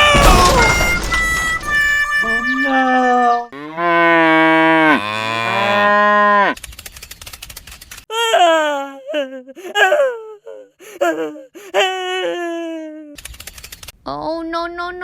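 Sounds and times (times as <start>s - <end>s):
cattle mooing: 3.6s - 6.6s
faint fast clicking: 13.2s - 13.9s.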